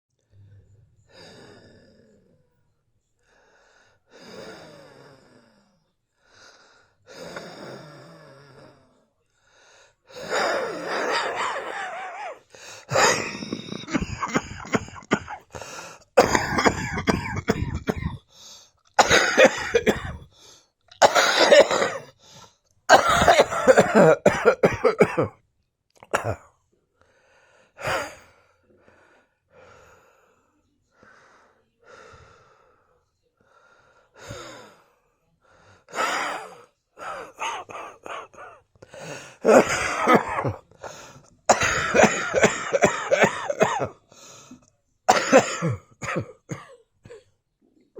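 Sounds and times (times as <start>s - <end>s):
wheezing breaths: 3.2s - 8.8s, 9.4s - 16.2s
person coughing hard: 10.2s - 18.2s, 19.0s - 20.3s, 21.0s - 22.1s, 22.9s - 25.3s, 26.1s - 26.4s, 27.8s - 28.2s, 35.9s - 44.0s, 45.1s - 47.2s.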